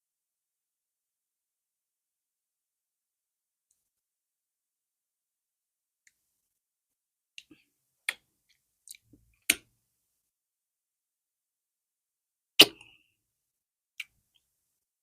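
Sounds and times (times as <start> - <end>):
mouth clicks and smacks: 8.9 - 9.6, 14.0 - 14.2.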